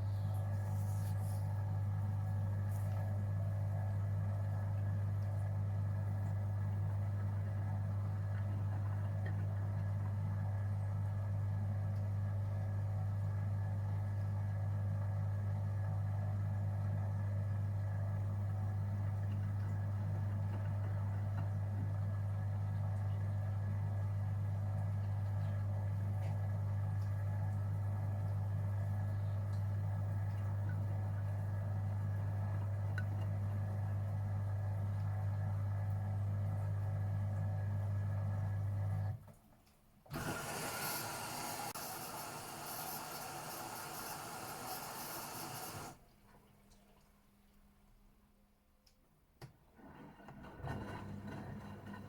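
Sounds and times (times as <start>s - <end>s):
washing machine humming: 0.0s - 39.4s, 40.0s - 47.3s
steady hiss: 40.6s - 46.0s.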